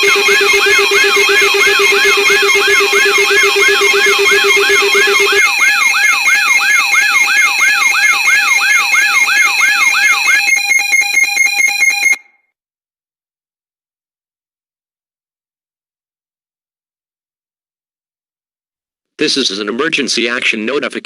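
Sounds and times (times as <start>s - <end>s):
steady pulsing tones: 0.0s - 9.9s
electronic alarm whooping: 0.0s - 12.3s.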